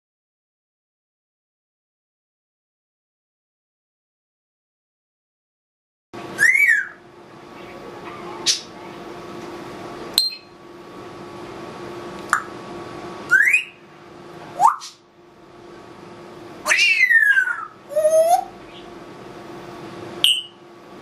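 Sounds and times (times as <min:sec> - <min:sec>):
steady low hum: 0:06.2 - 0:21.0
parrot whistling: 0:06.4 - 0:07.0, 0:13.3 - 0:13.8, 0:14.6 - 0:15.0, 0:16.6 - 0:18.5, 0:20.2 - 0:20.6.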